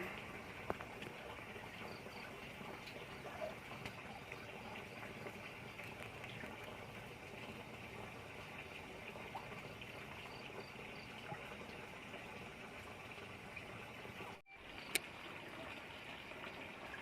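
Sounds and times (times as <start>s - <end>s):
water trickling and bubbling: 0.0s - 17.0s.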